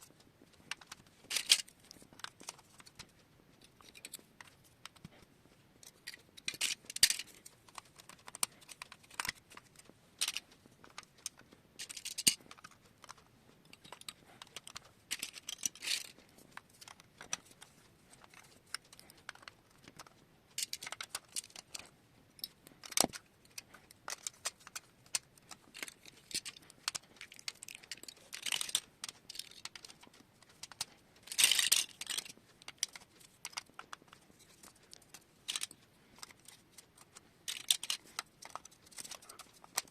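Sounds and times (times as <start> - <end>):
marbles clicking and rattling: 0.7 - 1.7, 10.2 - 16.2, 18.2 - 36.6, 37.5 - 39.9.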